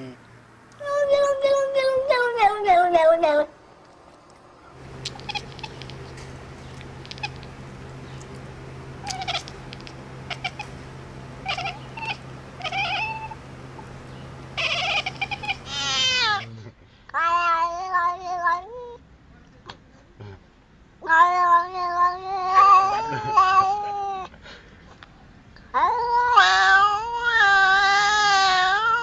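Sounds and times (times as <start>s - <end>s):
steady low hum: 4.7s - 16.7s
clicks: 4.8s - 15.9s
animal crying: 4.8s - 16.6s.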